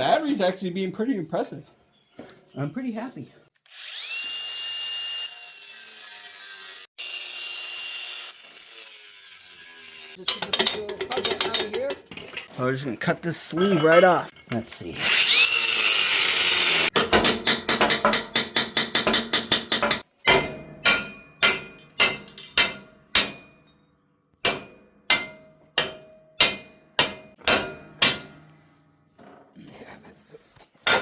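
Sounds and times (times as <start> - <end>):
angle grinder cutting steel: 3.6 - 10.4, 14.9 - 17.0.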